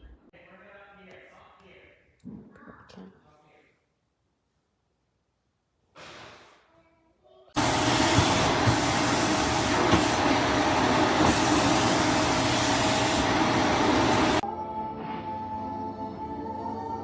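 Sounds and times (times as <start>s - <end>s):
vacuum cleaner running: 7.6s - 14.4s.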